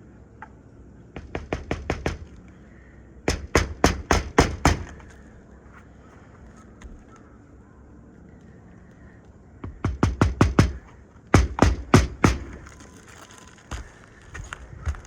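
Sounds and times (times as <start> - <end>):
hammer striking roofing nails: 1.2 - 2.4, 3.2 - 5.1, 9.6 - 12.7.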